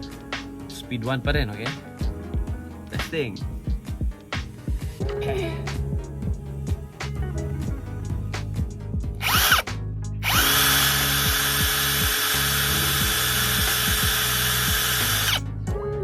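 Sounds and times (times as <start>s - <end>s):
cordless drill spinning: 9.2s - 15.4s.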